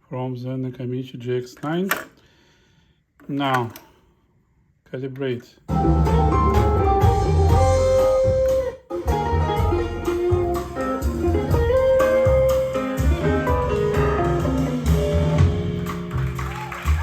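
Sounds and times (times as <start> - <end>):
guitar music from cassette: 5.7 - 17.0.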